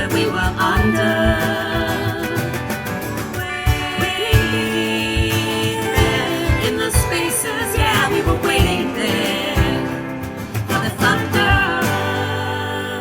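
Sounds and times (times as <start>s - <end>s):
guitar: 0.0s - 13.0s
live band playing: 0.0s - 13.0s
voices singing wordless harmony: 0.0s - 13.0s.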